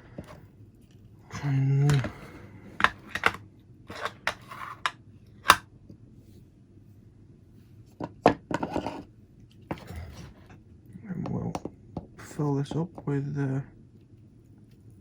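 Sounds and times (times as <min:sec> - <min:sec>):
scraping on workbench: 0:01.9 - 0:05.0, 0:08.0 - 0:09.1, 0:09.7 - 0:10.6
small tools clicking and knocking: 0:02.8 - 0:04.9.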